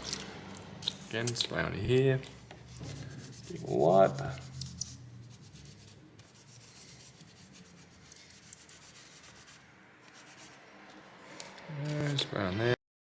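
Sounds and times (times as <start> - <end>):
paper rubbing scratchily: 2.6 - 10.6.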